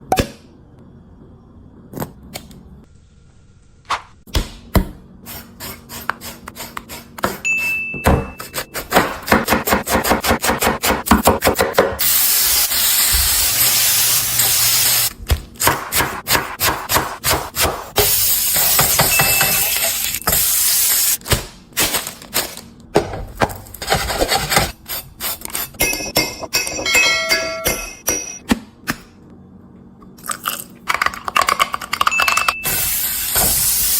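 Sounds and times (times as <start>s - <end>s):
fast chopping on cutting board: 8.5s - 12.0s, 15.6s - 18.1s
food sizzling in hot oil: 12.0s - 15.1s.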